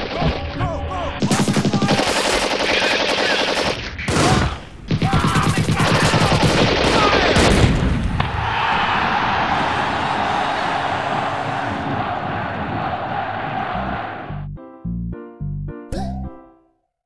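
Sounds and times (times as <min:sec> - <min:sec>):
rapid machine-gun fire: 0:01.2 - 0:04.3, 0:04.9 - 0:07.8.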